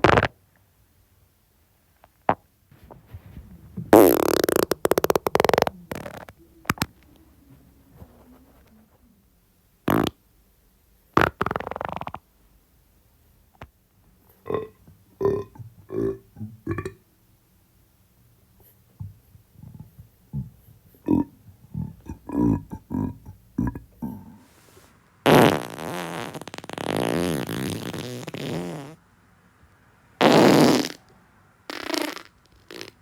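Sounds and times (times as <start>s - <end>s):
farts: 0.0s - 0.4s, 3.9s - 6.9s, 9.9s - 10.2s, 11.2s - 12.2s, 25.2s - 29.0s, 30.2s - 31.1s, 31.7s - 33.0s
burps: 3.9s - 6.9s, 9.9s - 10.2s, 14.4s - 17.0s, 19.0s - 24.4s.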